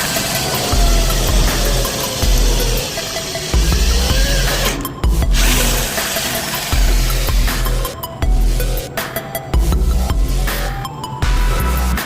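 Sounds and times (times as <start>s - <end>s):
electronic music with heavy bass: 0.0s - 12.0s.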